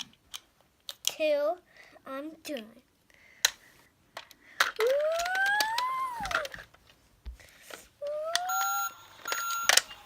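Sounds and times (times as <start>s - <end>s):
plastic toys clicking: 0.0s - 1.2s, 4.2s - 6.7s
rising and falling toy tone: 4.8s - 6.6s, 8.0s - 9.8s
electronic toy beeps: 8.3s - 10.0s.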